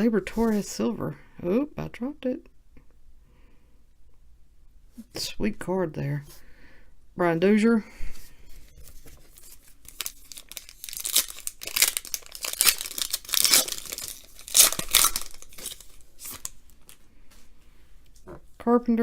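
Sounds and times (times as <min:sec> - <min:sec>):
card pack wrapper tearing: 0:08.9 - 0:16.6.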